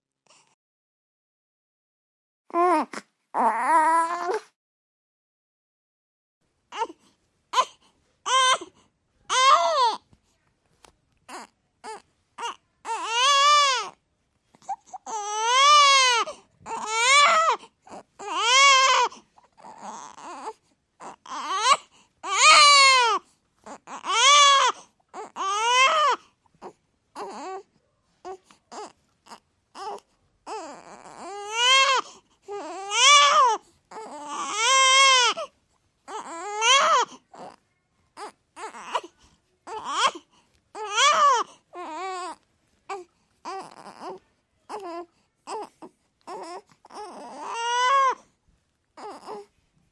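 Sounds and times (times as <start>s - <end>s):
baby catching breaths and whimpering: 6.7s - 10.4s, 11.3s - 37.6s, 38.2s - 48.4s, 49.0s - 49.6s
baby crying hard: 15.1s - 17.6s, 18.2s - 19.1s, 21.3s - 23.2s, 23.9s - 26.2s, 32.6s - 35.4s, 36.1s - 37.1s, 46.3s - 48.2s.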